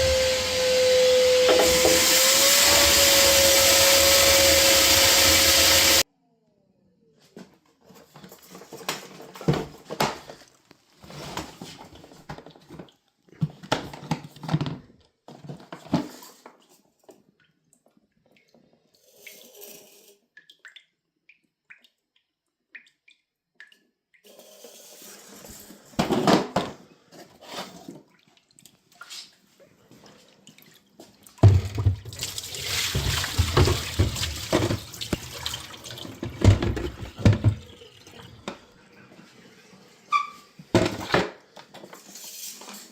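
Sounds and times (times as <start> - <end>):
water splashing and pouring: 27.4 - 39.8.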